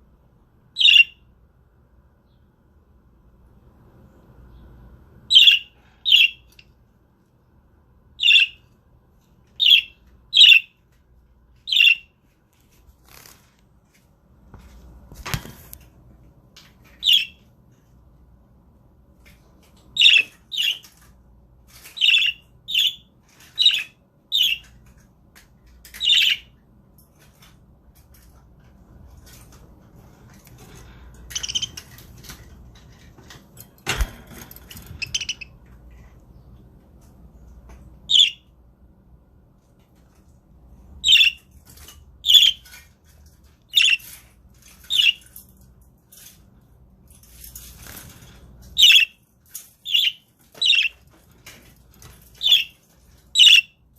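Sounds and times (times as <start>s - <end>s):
budgerigars chirping: 0.8s - 1.2s, 5.3s - 6.5s, 8.2s - 8.6s, 9.6s - 10.7s, 11.7s - 12.1s, 17.0s - 17.4s, 20.0s - 20.8s, 22.0s - 24.7s, 31.3s - 31.8s, 35.0s - 35.5s, 38.1s - 38.4s, 41.0s - 41.4s, 42.2s - 42.6s, 43.7s - 44.1s, 44.9s - 45.2s, 48.8s - 49.2s, 49.8s - 51.0s, 52.4s - 52.8s, 53.4s - 53.8s.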